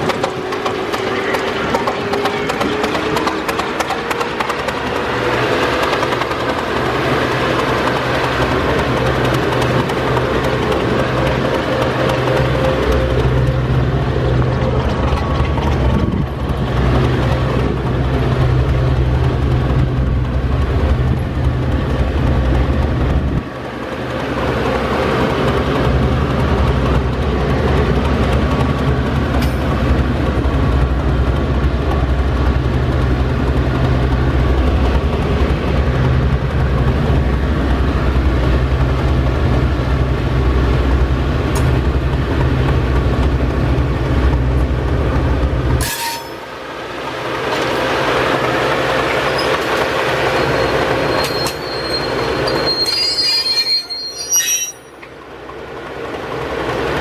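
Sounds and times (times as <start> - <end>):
diesel locomotive engine rumble: 0.0 - 57.0
locomotive rattling and rolling: 0.0 - 57.0
wheel squeal: 50.3 - 55.1.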